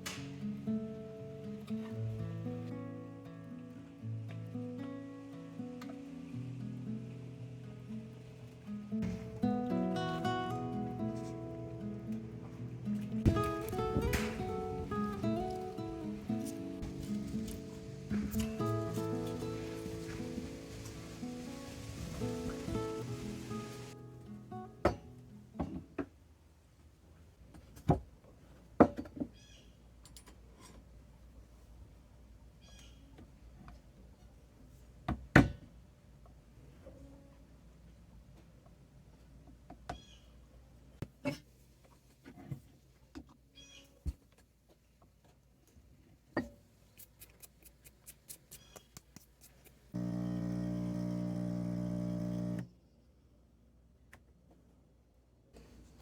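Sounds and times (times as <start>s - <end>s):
electric hum: 50.0s - 52.7s.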